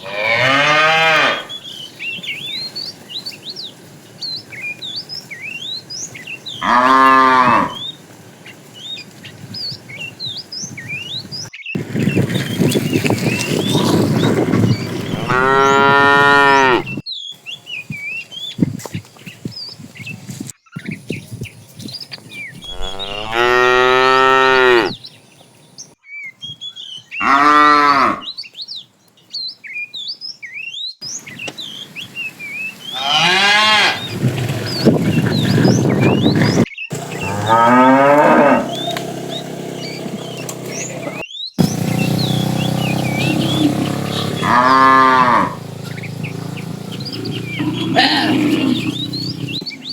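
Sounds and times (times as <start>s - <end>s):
cattle mooing: 0.0s - 1.6s, 6.6s - 7.8s, 15.0s - 17.0s, 22.7s - 25.0s, 27.2s - 28.3s, 33.0s - 34.6s, 36.9s - 39.0s, 43.0s - 49.6s
small birds chirping: 0.0s - 27.4s, 28.0s - 49.9s.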